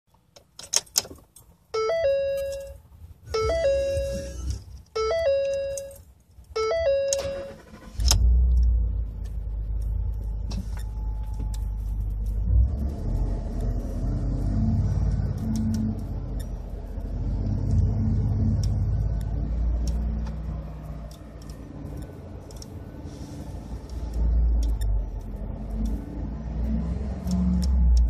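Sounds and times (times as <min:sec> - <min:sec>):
car warning chime: 0:01.8 - 0:02.8, 0:03.4 - 0:06.0, 0:06.6 - 0:07.9
engine starting and idling roughly: 0:07.2 - 0:08.4.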